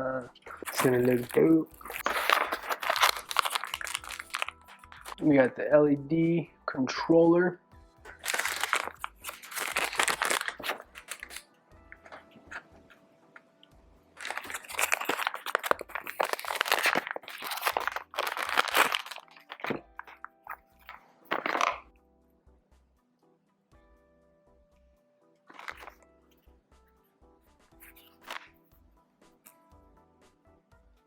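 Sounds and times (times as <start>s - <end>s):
plastic packaging crinkling: 0.0s - 5.5s, 8.1s - 11.4s, 14.2s - 21.8s, 25.5s - 26.0s, 27.8s - 28.5s
background music: 0.0s - 31.0s.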